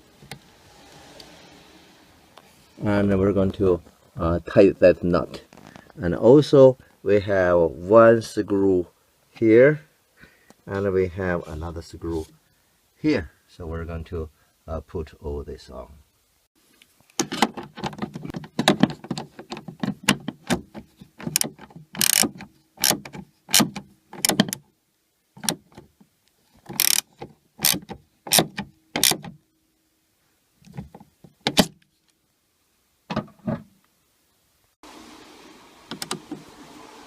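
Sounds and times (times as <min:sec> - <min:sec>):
screws tightened into plastic trim: 0:21.2 - 0:24.6, 0:26.7 - 0:29.2.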